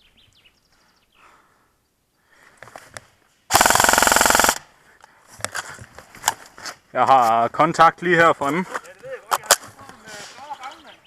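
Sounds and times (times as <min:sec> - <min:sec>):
airsoft rifle full-auto burst: 0:03.5 - 0:04.7.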